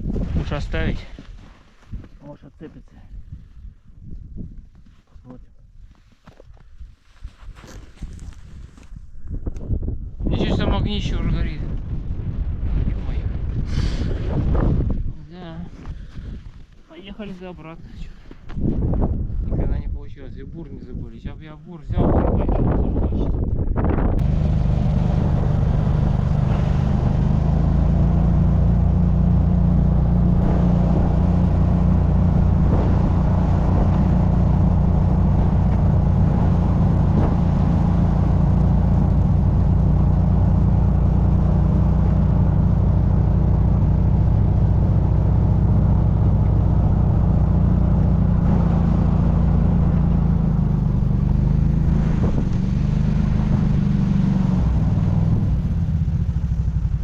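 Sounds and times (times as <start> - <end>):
snowmobile engine running: 24.2 - 57.0.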